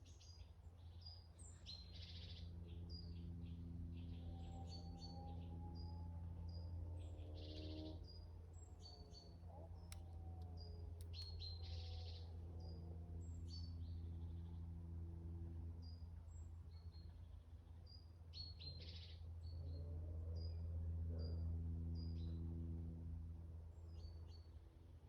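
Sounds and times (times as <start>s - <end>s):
faint low hum: 0.0s - 25.0s
small birds chirping: 6.5s - 14.6s.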